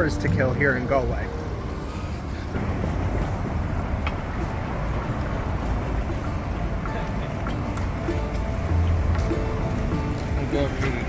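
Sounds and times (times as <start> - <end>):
low street rumble and hiss: 0.0 - 11.0.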